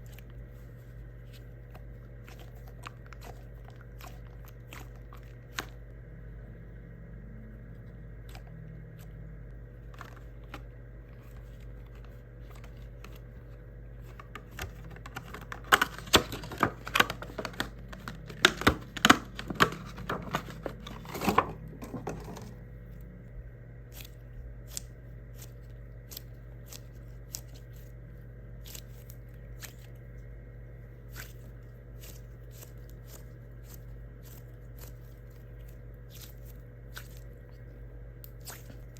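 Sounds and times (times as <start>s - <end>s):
steady low hum: 0.0s - 38.9s
squishy toy crinkling: 14.0s - 22.5s.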